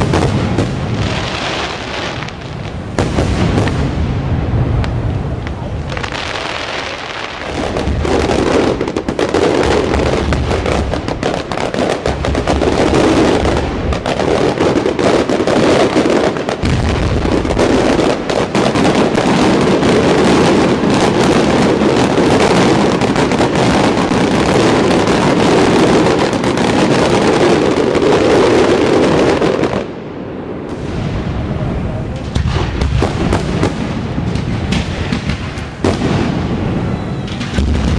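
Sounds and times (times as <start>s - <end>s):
fireworks crackling: 0.0s - 37.9s.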